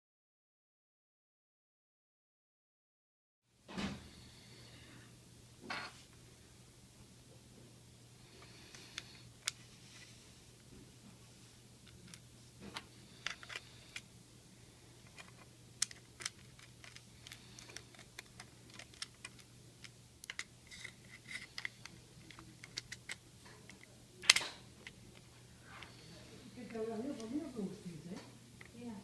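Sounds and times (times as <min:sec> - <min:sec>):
plastic parts clicking and tapping: 0:11.8 - 0:14.1, 0:15.0 - 0:25.3.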